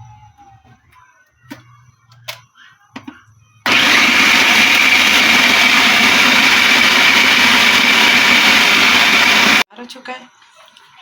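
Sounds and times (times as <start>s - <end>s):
electric food chopper running: 3.7s - 9.6s.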